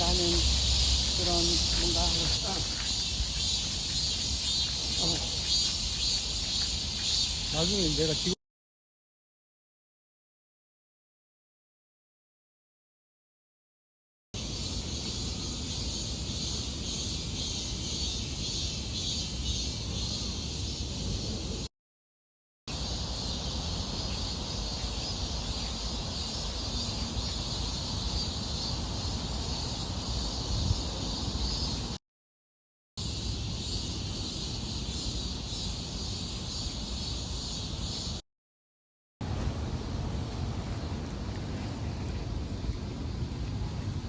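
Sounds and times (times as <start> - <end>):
cicadas droning: 0.0 - 8.4, 14.4 - 21.7, 22.7 - 32.0, 33.0 - 38.2.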